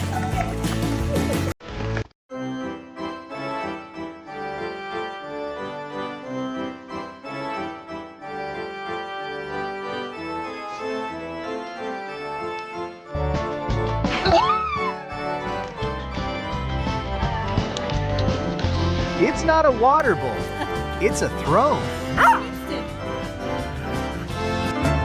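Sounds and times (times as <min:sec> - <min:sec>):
organ-like keyboard chords: 0:02.4 - 0:13.9, 0:17.9 - 0:25.0.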